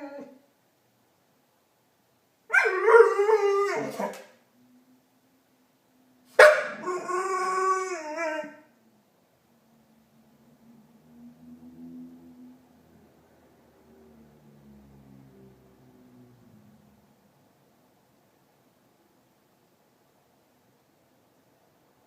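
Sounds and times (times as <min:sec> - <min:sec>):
dog howling: 0:00.0 - 0:00.4, 0:02.5 - 0:04.2, 0:06.7 - 0:08.7.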